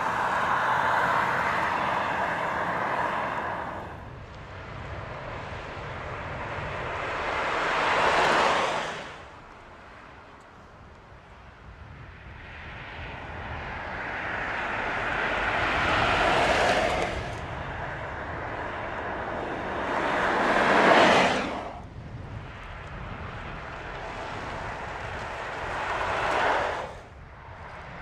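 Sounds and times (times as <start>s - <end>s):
car driving past: 0.0s - 4.0s, 6.5s - 9.4s, 13.7s - 21.9s.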